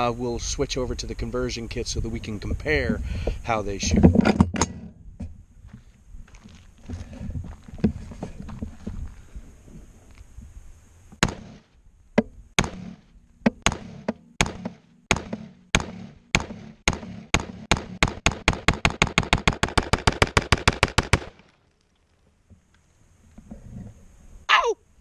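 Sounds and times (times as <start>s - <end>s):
rifle shots: 11.2s - 11.6s, 13.6s - 21.4s.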